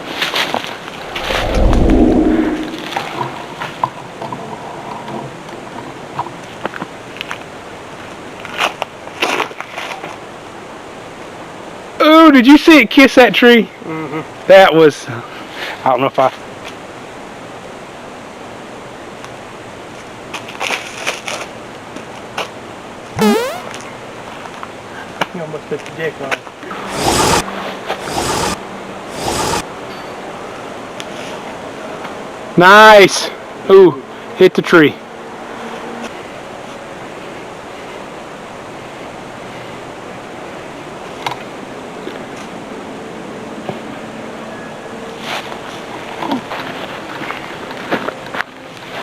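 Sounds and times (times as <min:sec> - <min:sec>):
rushing outdoor noise: 0:00.0 - 0:09.1, 0:26.4 - 0:32.6
wind rushing across microphone: 0:00.8 - 0:03.6.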